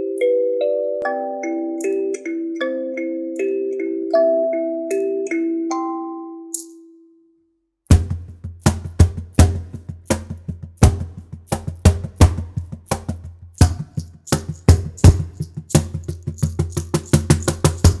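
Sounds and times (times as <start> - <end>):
finger shaker shakes: 7.9 - 18.0.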